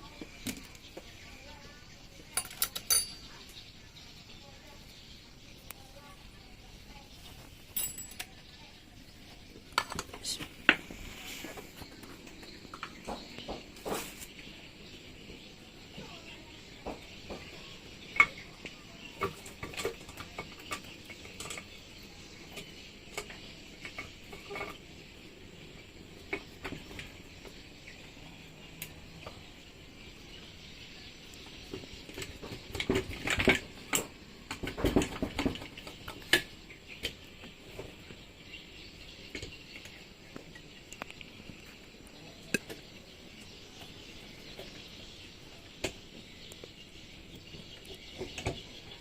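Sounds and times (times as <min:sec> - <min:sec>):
metallic clicks and knocks of tools: 0:02.4 - 0:03.2.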